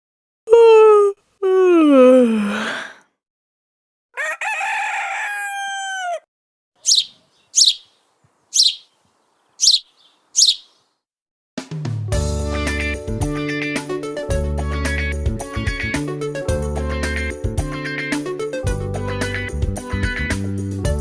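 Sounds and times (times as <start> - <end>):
high bird chirps: 6.8 - 10.8
bird calls: 6.8 - 10.9.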